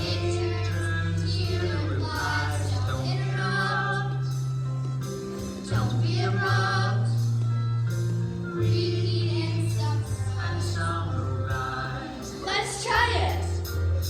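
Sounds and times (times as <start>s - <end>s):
group singing: 0.0s - 4.5s, 5.6s - 7.4s, 8.5s - 13.2s
accompaniment music with bass: 0.0s - 14.0s.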